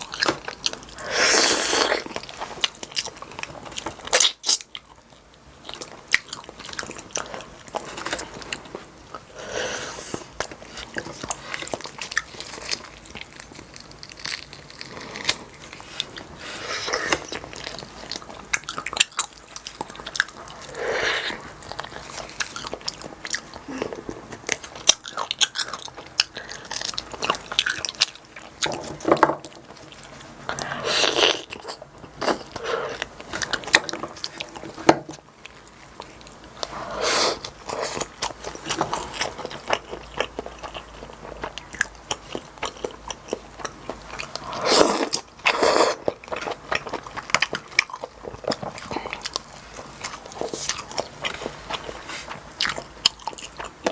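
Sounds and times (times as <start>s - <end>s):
wet chewing and biting: 0.0s - 53.9s.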